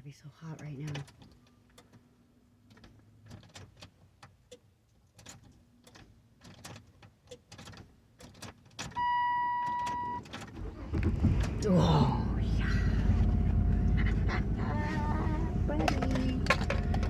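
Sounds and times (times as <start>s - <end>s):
low rumble: 10.7s - 17.0s.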